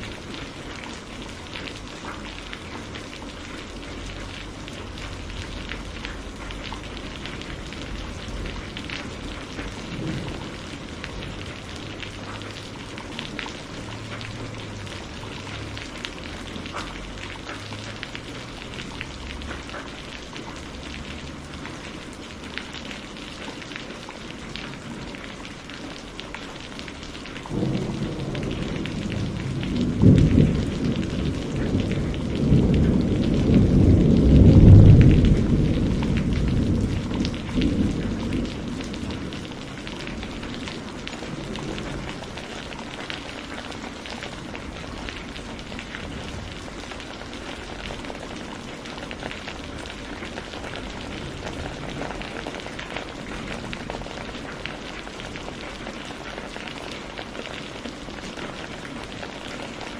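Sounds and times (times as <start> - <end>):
rain hissing: 0.0 - 59.9
thunder rolling: 4.1 - 17.2, 27.4 - 43.4.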